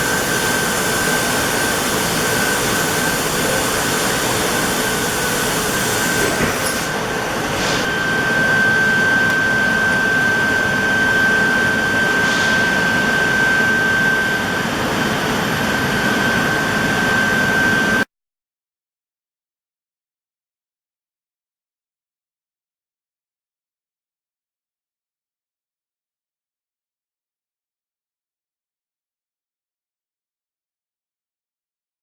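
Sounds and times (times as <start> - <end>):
laser cutting machine hissing: 0.0 - 15.6
high machine whine: 0.0 - 18.1.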